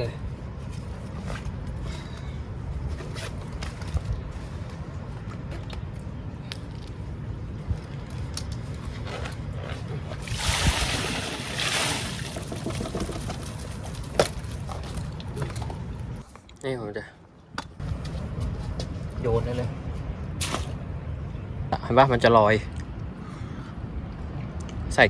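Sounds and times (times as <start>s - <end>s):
water pouring: 10.2s - 14.2s.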